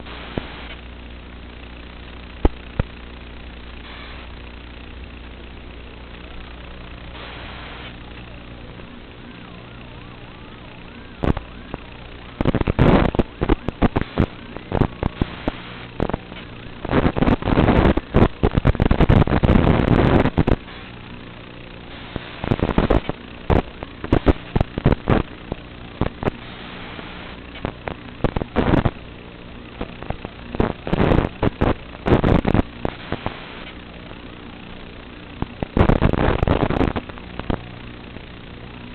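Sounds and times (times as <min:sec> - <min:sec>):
drone motors surging: 0:00.0 - 0:38.9
low hum: 0:00.0 - 0:38.9.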